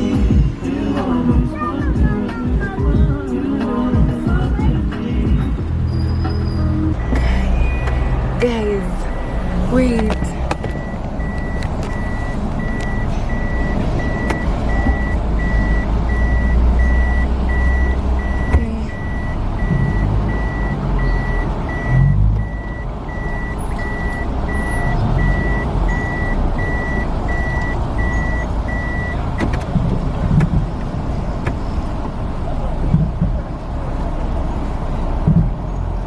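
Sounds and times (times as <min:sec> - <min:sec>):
engine and road rumble: 0:00.0 - 0:36.0
vehicle warning beeper: 0:05.9 - 0:29.5.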